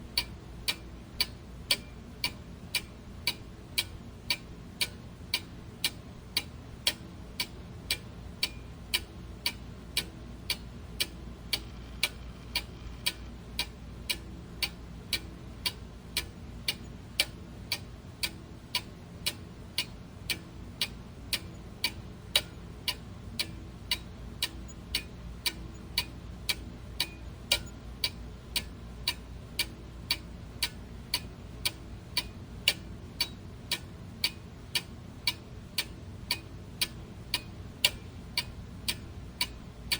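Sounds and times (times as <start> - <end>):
clock ticking: 0.2 - 39.9
faint low hum: 6.8 - 34.4.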